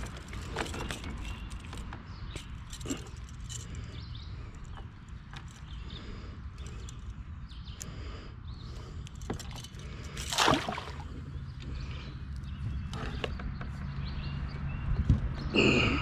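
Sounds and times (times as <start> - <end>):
small water sounds: 9.3 - 11.3
loud splash: 10.3 - 11.0.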